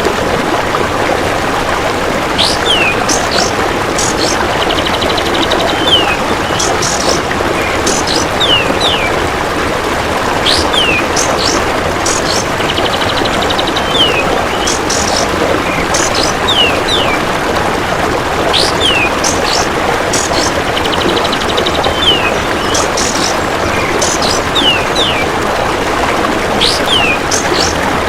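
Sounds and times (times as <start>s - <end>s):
steady rushing noise: 1.6s - 28.0s
bird whistles and chirps: 2.4s - 4.4s, 10.4s - 12.4s, 18.5s - 20.6s, 21.9s - 25.2s, 26.6s - 27.8s.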